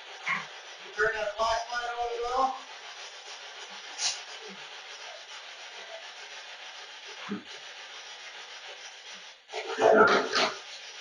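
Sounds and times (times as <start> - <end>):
radio static hiss: 9.5 - 10.9.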